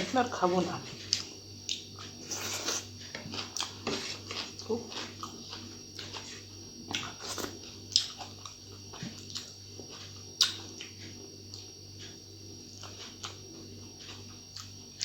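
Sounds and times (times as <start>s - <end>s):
steady low hum: 0.0s - 15.0s
person chewing with wet mouth clicks: 1.1s - 6.3s, 6.9s - 11.8s.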